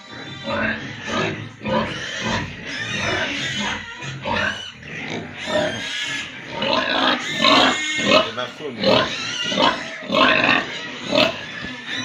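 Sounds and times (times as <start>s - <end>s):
pigs grunting and squealing: 0.0s - 12.0s.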